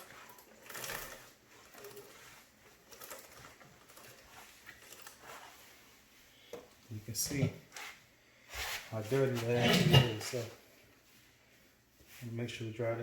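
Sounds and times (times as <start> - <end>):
cloth rubbing wheel rim: 0.0 - 9.9.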